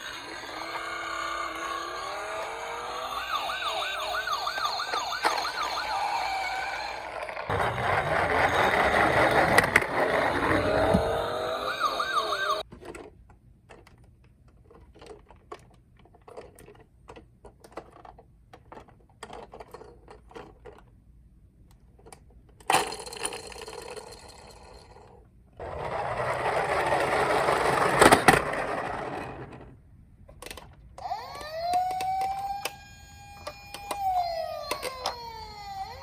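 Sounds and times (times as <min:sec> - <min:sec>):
small wheels rolling rattle: 0:00.0 - 0:04.3, 0:05.1 - 0:12.6, 0:22.8 - 0:29.8
toy car clicks and taps: 0:30.4 - 0:36.0.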